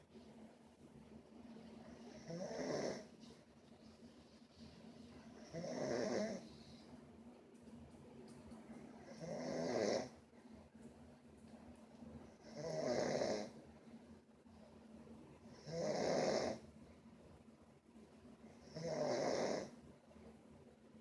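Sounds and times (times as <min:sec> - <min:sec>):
person snoring: 0:02.1 - 0:03.1, 0:05.4 - 0:06.5, 0:09.0 - 0:10.2, 0:12.4 - 0:13.5, 0:15.6 - 0:16.6, 0:18.6 - 0:19.7.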